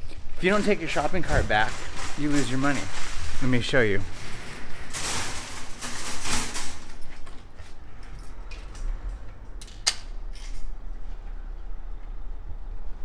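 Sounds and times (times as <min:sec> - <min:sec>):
metal shopping cart rattling: 0:00.4 - 0:07.3.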